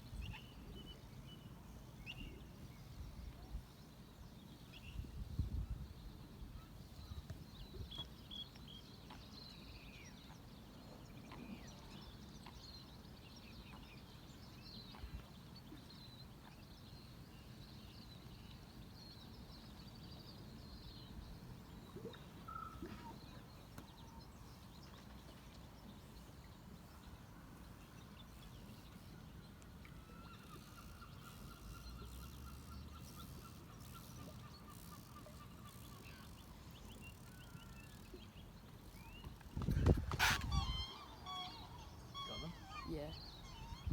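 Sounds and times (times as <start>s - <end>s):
small bird chirps: 30.3s - 43.9s
rapid pulsing bird call: 39.7s - 43.9s.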